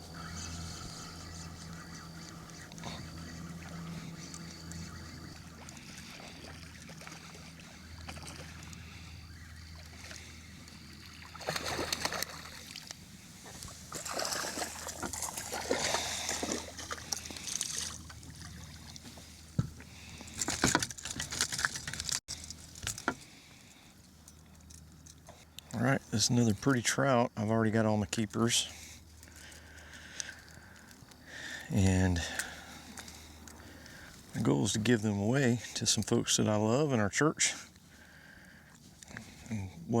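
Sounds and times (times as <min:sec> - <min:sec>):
low steady hum: 0:00.0 - 0:40.0
fish splashing in water: 0:09.7 - 0:19.1.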